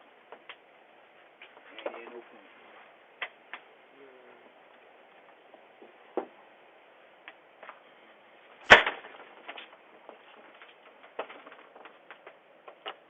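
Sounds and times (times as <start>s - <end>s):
faint steady hiss: 0.0s - 13.0s.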